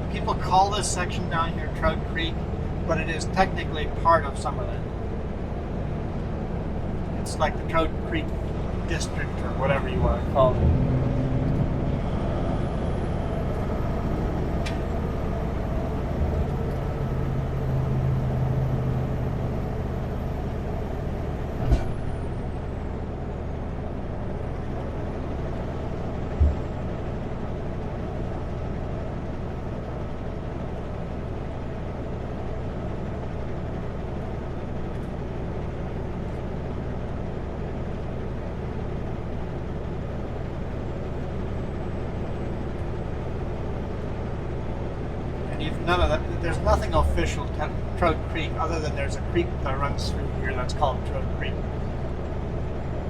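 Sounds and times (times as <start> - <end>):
truck diesel engine cruising: 0.0 - 53.0
thump in truck cab: 21.6 - 22.0.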